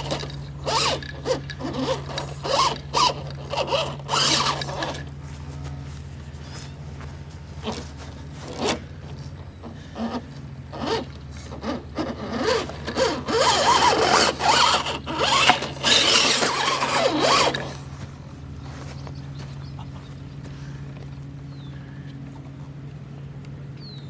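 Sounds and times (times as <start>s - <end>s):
toy car electric motor whining: 0.0s - 5.2s, 7.6s - 17.9s.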